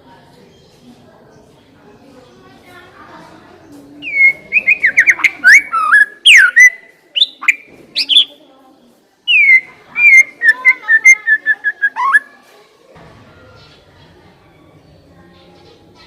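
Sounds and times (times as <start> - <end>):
bird singing whistled phrases: 4.0 - 8.3, 9.3 - 12.3.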